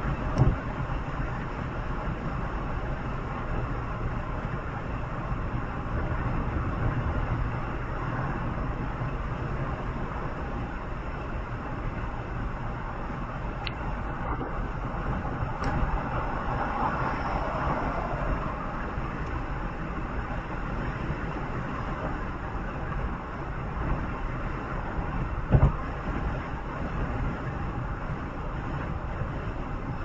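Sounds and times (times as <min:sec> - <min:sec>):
vehicle running noise from inside: 0:00.0 - 0:30.0
short thump: 0:25.5 - 0:25.8.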